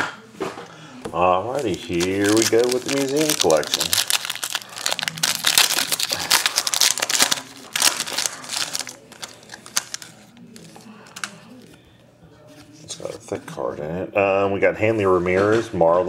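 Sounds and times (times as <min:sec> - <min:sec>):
card pack wrapper tearing and crinkling: 0:01.5 - 0:11.4
cards rustling and clicking: 0:01.5 - 0:11.8.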